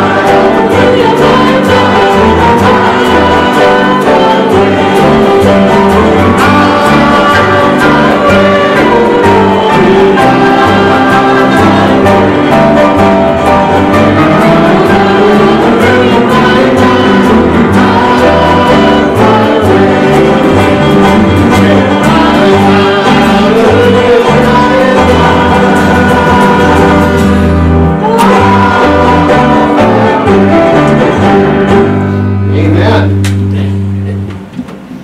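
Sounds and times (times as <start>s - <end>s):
congregation singing a hymn: 0.0s - 32.6s
instrumental accompaniment: 0.0s - 35.0s.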